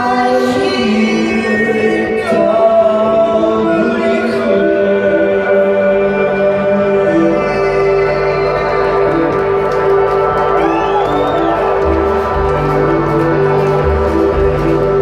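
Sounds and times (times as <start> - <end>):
layered voices singing long notes: 0.0 - 15.0
sustained accompaniment: 8.5 - 15.0.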